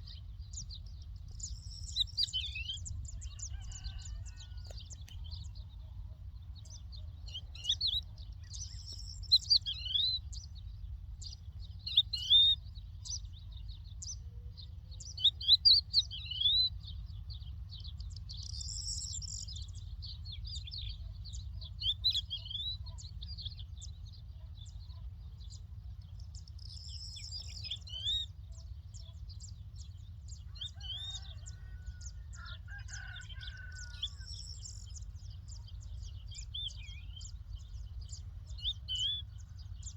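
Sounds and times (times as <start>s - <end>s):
steady low rumble: 0.0s - 3.5s, 31.4s - 39.9s
lark singing: 0.0s - 6.0s, 6.7s - 10.3s, 11.8s - 13.5s, 15.1s - 17.0s, 26.6s - 29.7s, 30.4s - 39.9s
lower-pitched bird call: 1.4s - 6.1s, 30.4s - 39.9s.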